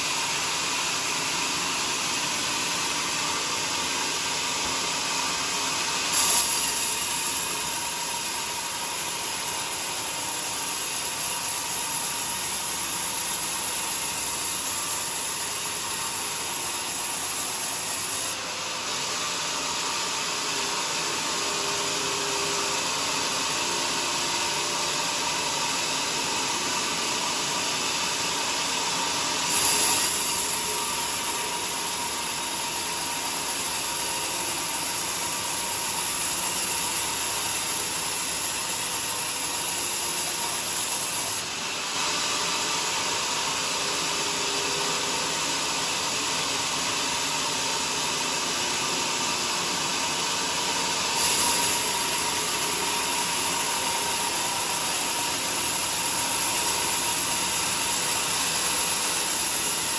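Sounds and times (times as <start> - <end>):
sawmill running: 0.0 - 59.9.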